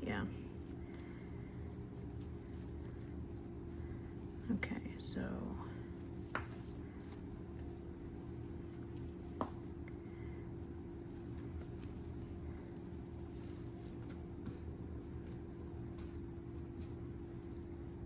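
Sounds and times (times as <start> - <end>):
steady low hum: 0.0 - 18.0
beaded necklace clinking: 0.4 - 9.8, 10.7 - 14.0.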